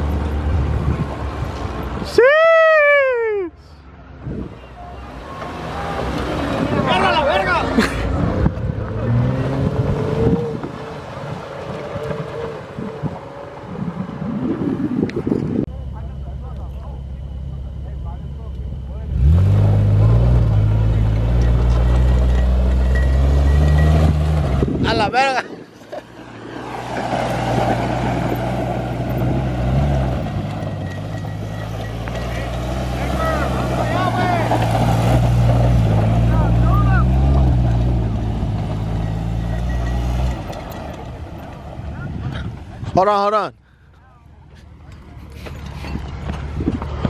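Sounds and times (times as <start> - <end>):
car engine revving under load: 4.2 - 15.6, 18.5 - 24.9, 25.7 - 43.0
wind buffeting microphone: 8.1 - 15.7, 24.0 - 25.8, 45.9 - 47.0
car engine running under load: 25.6 - 43.0.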